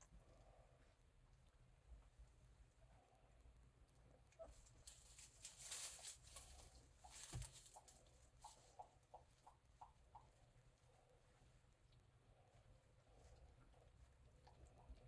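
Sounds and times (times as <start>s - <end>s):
puppy paws pattering: 4.3s - 15.0s.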